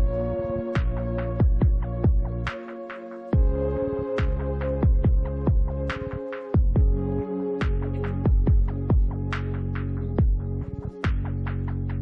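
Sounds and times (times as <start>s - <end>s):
deep falling kick drum: 0.8s - 2.4s, 3.4s - 3.6s, 4.2s - 5.8s, 6.6s - 7.0s, 7.6s - 9.2s, 10.2s - 10.4s.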